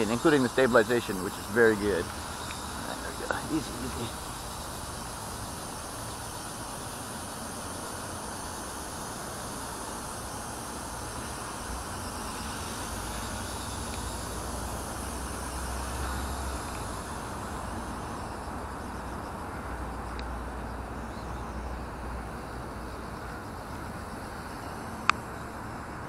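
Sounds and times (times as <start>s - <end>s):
rc helicopter rotors whirring: 0.0s - 20.3s.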